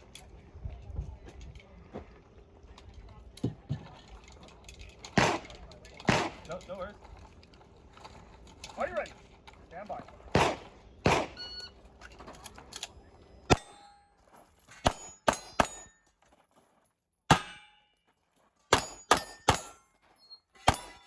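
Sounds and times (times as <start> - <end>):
pistol shots: 5.1 - 6.5, 10.3 - 11.5, 13.5 - 13.9, 14.8 - 15.9, 18.7 - 19.8, 20.6 - 21.0
steel targets ringing: 13.5 - 16.0, 17.3 - 18.0, 18.7 - 21.0.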